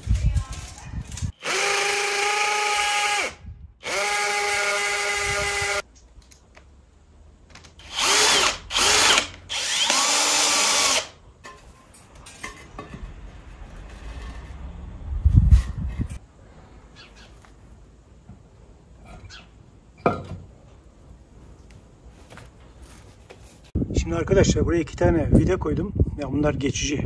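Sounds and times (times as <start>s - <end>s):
electric drill driving screws: 1.4s - 5.8s, 7.8s - 11.2s.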